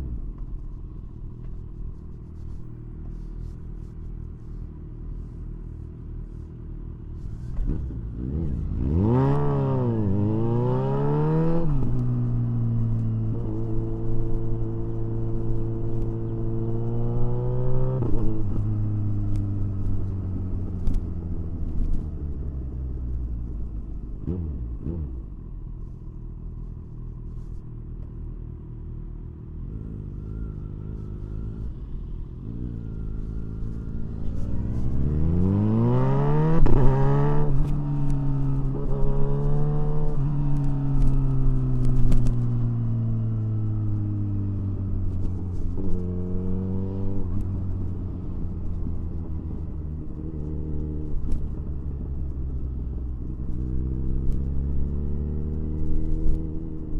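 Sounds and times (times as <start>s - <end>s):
motorcycle engine revving: 7.6s - 19.2s, 29.6s - 51.4s.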